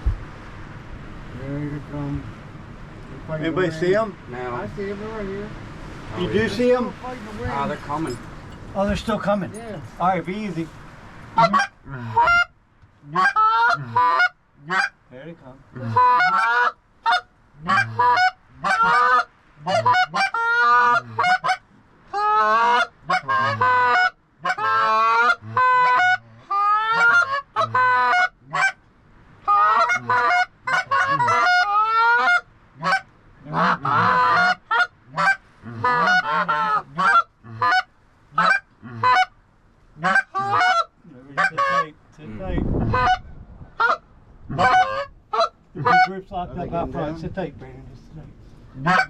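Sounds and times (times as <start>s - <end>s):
geese honking and clucking: 10.0s - 15.0s, 15.7s - 28.8s, 29.4s - 39.4s, 40.0s - 42.0s, 42.8s - 46.2s, 48.5s - 49.0s.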